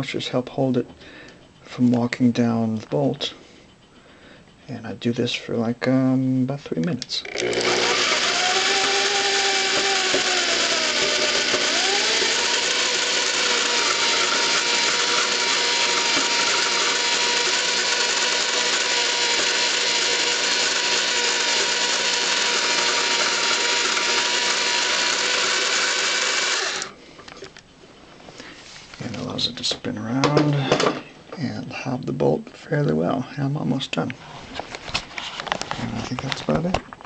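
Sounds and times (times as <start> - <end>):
electric hand drill running: 7.2 - 27.0.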